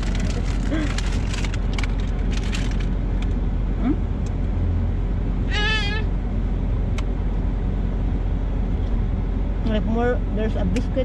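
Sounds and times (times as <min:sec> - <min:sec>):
car rumble inside cabin: 0:00.0 - 0:11.0
high wavering cry: 0:05.5 - 0:06.1.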